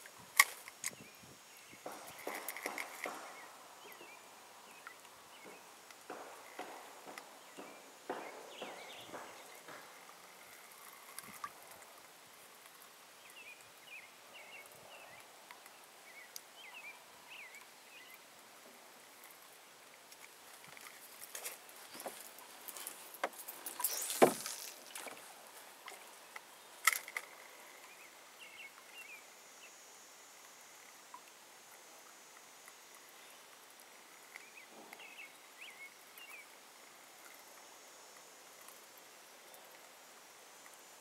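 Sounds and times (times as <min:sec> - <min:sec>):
fishing gear knocks and clicks: 0:01.9 - 0:03.4.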